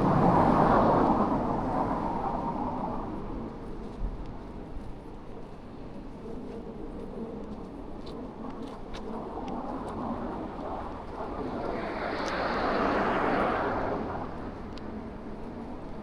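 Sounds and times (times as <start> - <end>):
vehicle passing by: 11.3 - 14.8.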